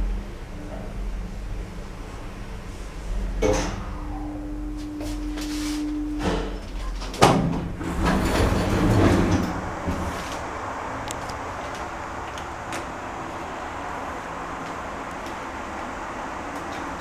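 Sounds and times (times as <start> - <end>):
lift running noise: 0.0 - 17.0
lift doors closing: 3.3 - 13.2.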